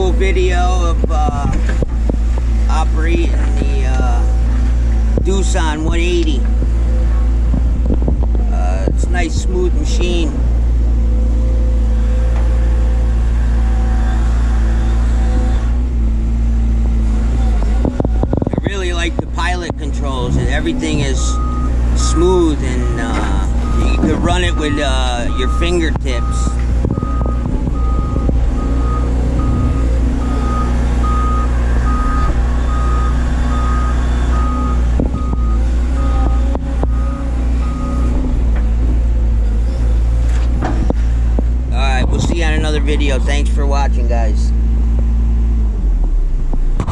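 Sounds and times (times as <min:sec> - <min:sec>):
excavator diesel engine droning: 0:00.0 - 0:46.9
back-up alarm beeping: 0:20.8 - 0:38.2.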